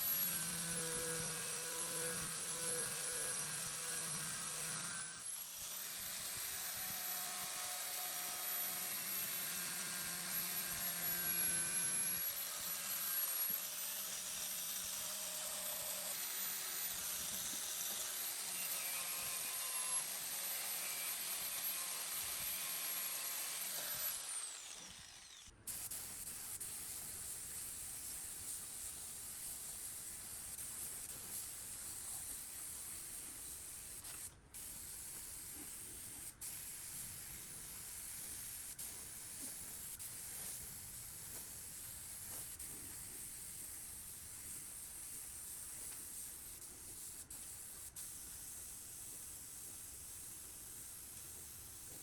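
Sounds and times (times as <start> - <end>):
power tool motor whining: 0.0 - 25.5.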